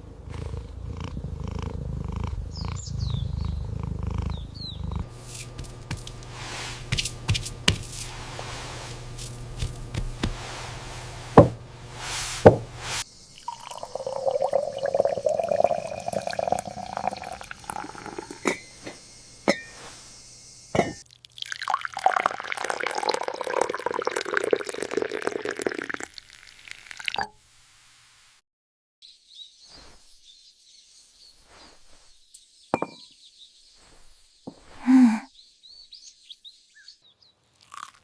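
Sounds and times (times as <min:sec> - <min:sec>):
sharp knocks: 0:11.4 - 0:11.6, 0:12.4 - 0:12.7
water pouring and dripping: 0:11.9 - 0:18.4, 0:21.0 - 0:27.3.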